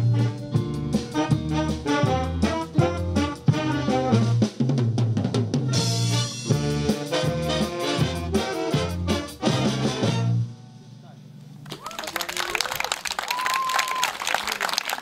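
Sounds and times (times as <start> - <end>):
upbeat music with brass and drums: 0.0 - 10.7.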